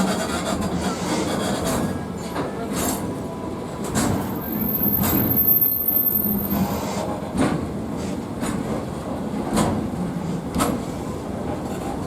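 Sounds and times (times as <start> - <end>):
train wheels knocking on track: 7.3 - 12.0.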